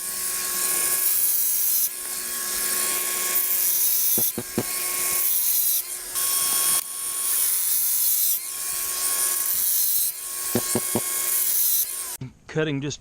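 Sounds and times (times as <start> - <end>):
grinder cutting concrete: 0.0 - 12.2
grinder motor whine: 2.0 - 5.4, 10.3 - 12.1.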